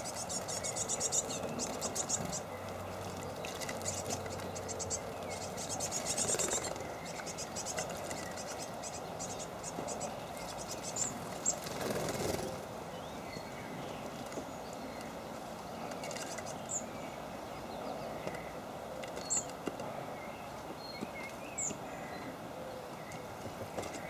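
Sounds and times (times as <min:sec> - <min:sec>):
outdoor background hiss: 0:00.0 - 0:24.0
songbirds chirping: 0:00.0 - 0:24.0.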